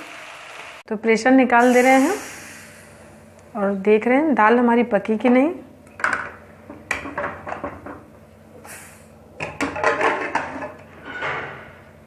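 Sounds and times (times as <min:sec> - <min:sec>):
short hiss: 0:01.6 - 0:03.0, 0:08.6 - 0:09.1.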